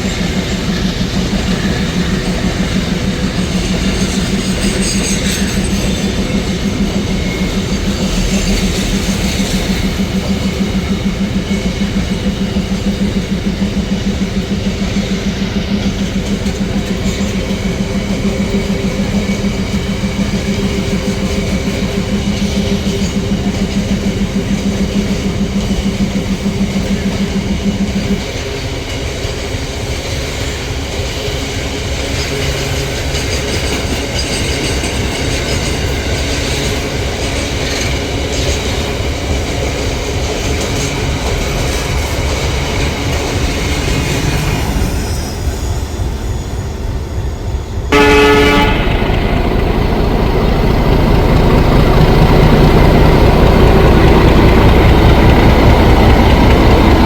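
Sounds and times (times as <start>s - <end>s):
train wheels clacking over rails: 0.0s - 57.0s
held tone: 47.9s - 50.7s
locomotive horn blast: 47.9s - 51.2s.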